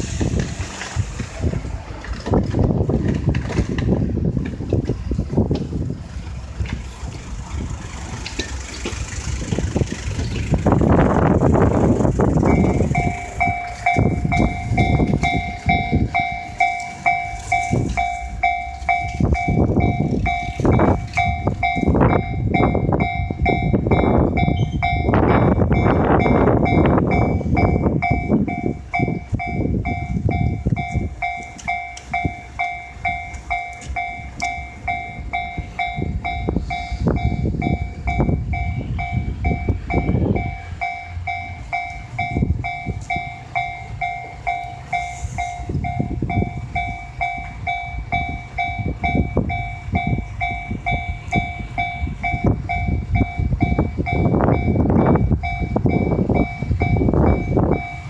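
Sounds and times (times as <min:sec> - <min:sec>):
train low rumble: 0:00.0 - 0:58.0
train wheels clacking over joints: 0:00.0 - 0:58.0
level-crossing bell two-tone dings: 0:12.5 - 0:58.0.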